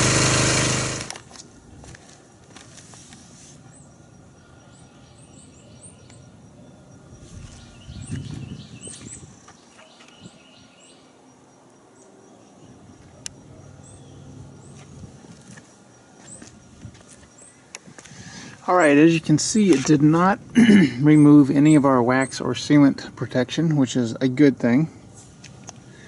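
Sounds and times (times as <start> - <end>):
quiet outdoor background noise: 0.8 - 26.0
small birds chirping: 3.5 - 20.4.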